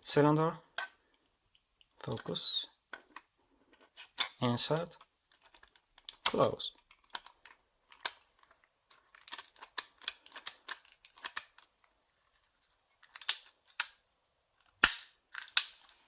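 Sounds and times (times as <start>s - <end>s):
sharp plastic snaps: 5.6s - 8.3s, 13.1s - 15.8s.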